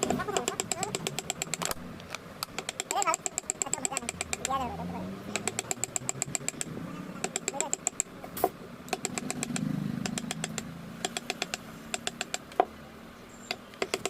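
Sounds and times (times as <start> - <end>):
mallet striking chisel into wood: 2.6 - 4.5, 8.9 - 12.4.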